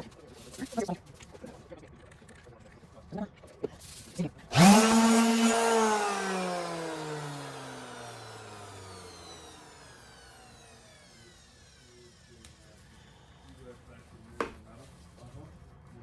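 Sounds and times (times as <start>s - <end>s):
orbital sander spinning down: 4.5s - 13.7s.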